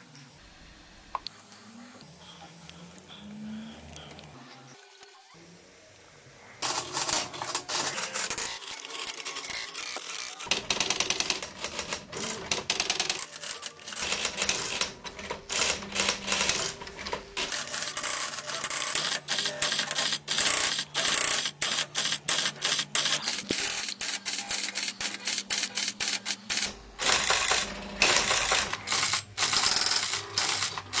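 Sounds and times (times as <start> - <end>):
typewriter keys clacking: 17.4 - 31.0.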